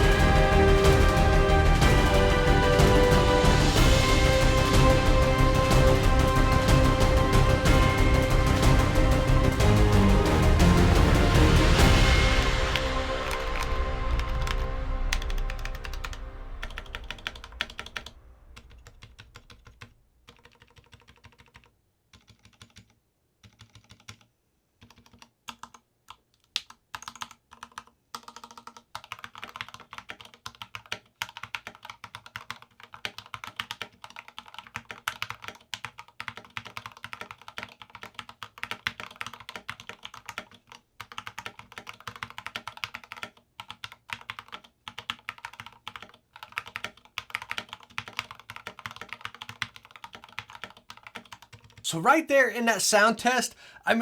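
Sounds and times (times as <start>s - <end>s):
background music: 0.0s - 19.3s
mechanical keyboard typing: 14.5s - 51.8s.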